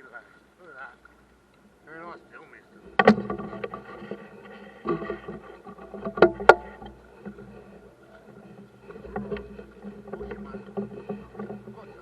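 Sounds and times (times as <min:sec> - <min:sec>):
boat motor humming: 0:00.0 - 0:12.0
sharp knocks: 0:02.8 - 0:07.5.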